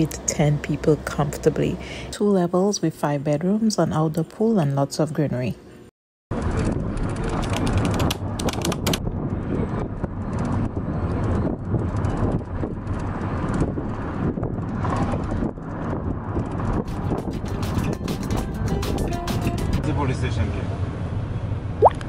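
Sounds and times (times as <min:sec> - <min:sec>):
wind buffeting microphone: 0:06.3 - 0:18.4
car engine and road noise: 0:06.3 - 0:22.0.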